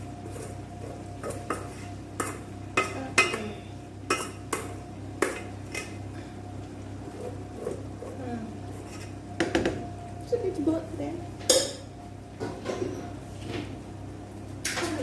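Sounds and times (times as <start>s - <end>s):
steady low hum: 0.0s - 14.6s.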